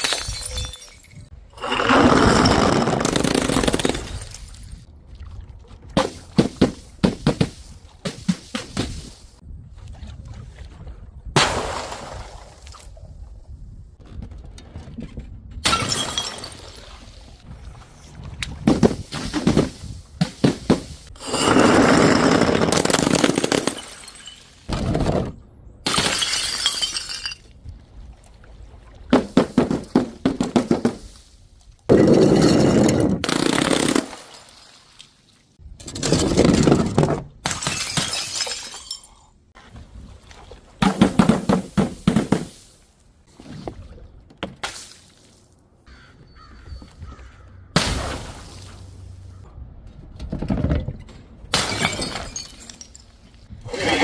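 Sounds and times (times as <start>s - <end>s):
glass bottles shattering: 0.0s - 4.6s, 15.6s - 16.8s, 18.8s - 24.8s, 25.9s - 27.5s, 31.9s - 34.6s, 36.0s - 39.3s, 51.5s - 53.3s.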